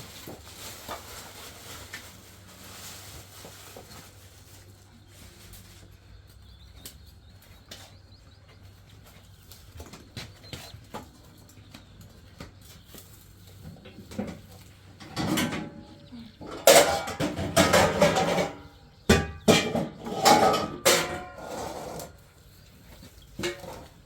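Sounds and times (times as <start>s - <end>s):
dishes and pots clattering: 13.7s - 22.2s, 23.4s - 24.0s.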